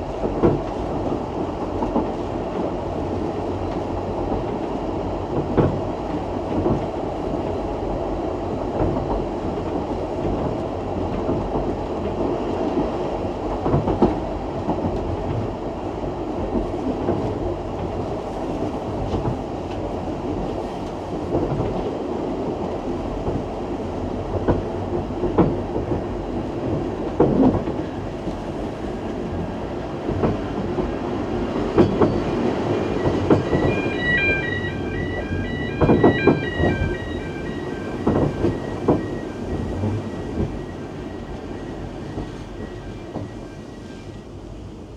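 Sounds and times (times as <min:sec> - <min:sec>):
train wheels rumbling on rails: 0:00.0 - 0:44.9
wheels clacking over rail joints: 0:30.0 - 0:41.4.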